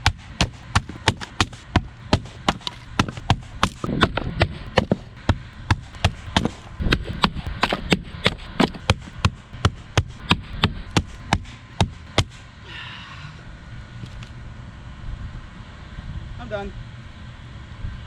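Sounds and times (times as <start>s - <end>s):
axe chopping wood: 0.0s - 12.4s.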